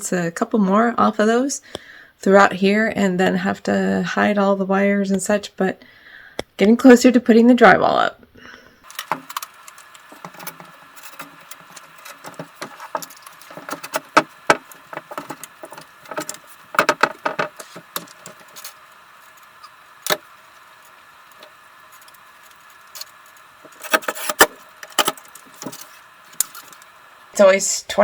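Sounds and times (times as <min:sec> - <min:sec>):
faint steady hum: 0:00.0 - 0:28.0
objects being handled: 0:08.8 - 0:27.0.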